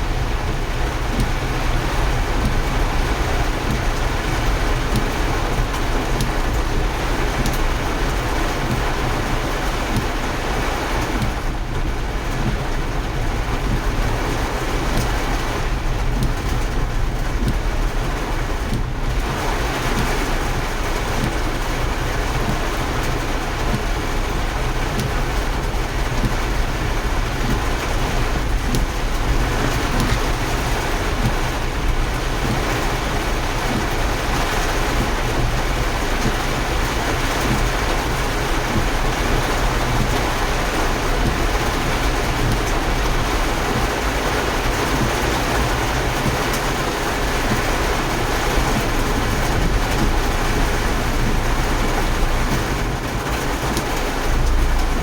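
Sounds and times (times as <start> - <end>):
rushing rain: 0.0 - 55.0
low rumble: 54.0 - 55.0.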